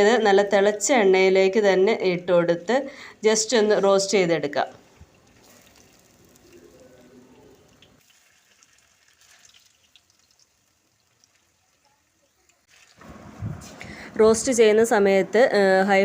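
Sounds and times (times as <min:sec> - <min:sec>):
food frying in hot oil: 0:07.8 - 0:13.0.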